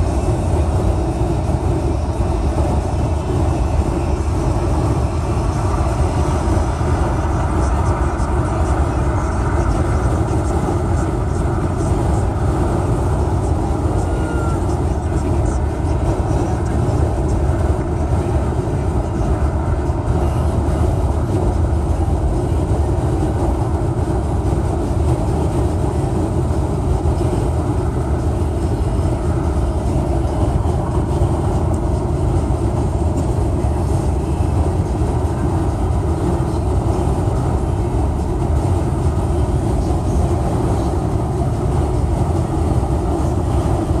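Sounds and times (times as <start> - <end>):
steady low rumbling: 0.0 - 44.0.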